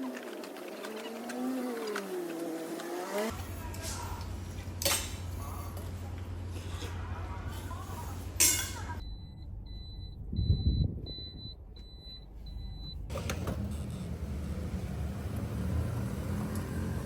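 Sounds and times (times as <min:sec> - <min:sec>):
low rumble: 0:09.0 - 0:12.9.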